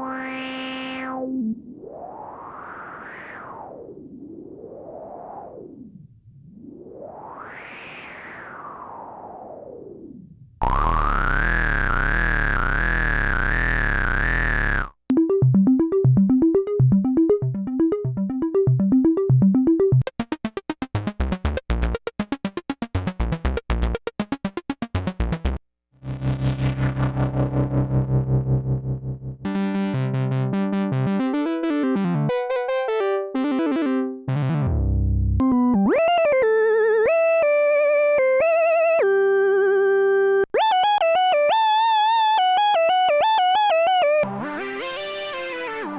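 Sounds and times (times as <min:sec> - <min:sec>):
analog synthesizer tones: 0:10.6 - 0:37.6.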